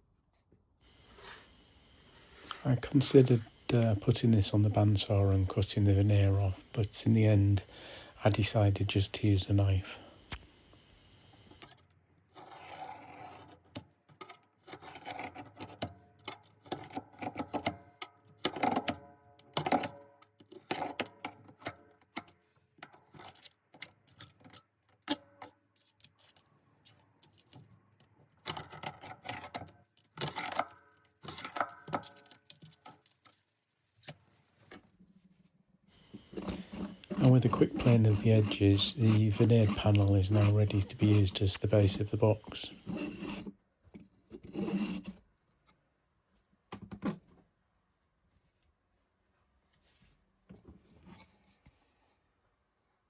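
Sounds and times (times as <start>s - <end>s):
knife cutting wood veneer: 36.2s - 43.5s.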